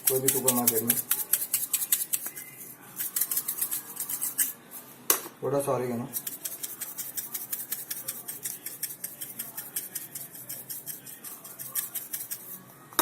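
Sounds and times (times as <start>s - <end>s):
dried herbs sprinkling ticks: 6.2s - 12.4s.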